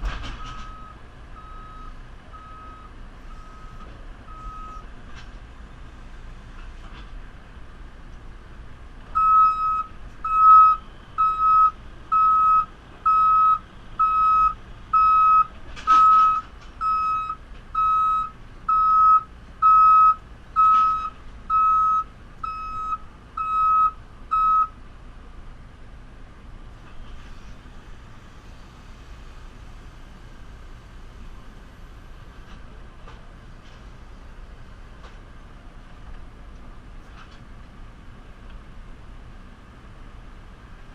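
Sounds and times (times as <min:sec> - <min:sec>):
reversing alarm beeping: 0:00.4 - 0:04.8, 0:09.2 - 0:24.8.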